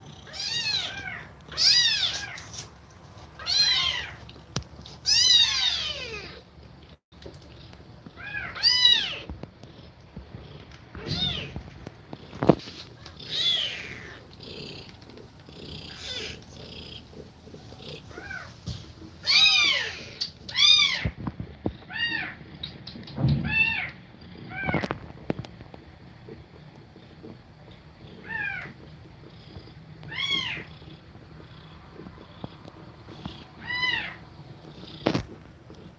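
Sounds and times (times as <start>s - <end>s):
kittens mewing: 13.0s - 14.9s, 15.6s - 18.6s, 19.2s - 21.2s, 23.4s - 24.9s, 28.1s - 28.8s, 31.4s - 35.3s.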